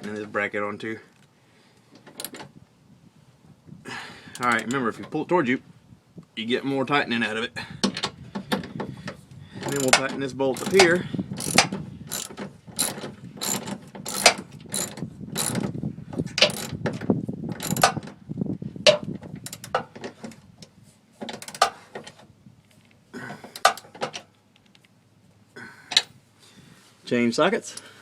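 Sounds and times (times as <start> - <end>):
socket ratchet clicking: 2.2 - 2.4, 9.6 - 10.0, 10.6 - 15.7, 16.4 - 16.8, 17.6 - 18.0, 19.5 - 19.8.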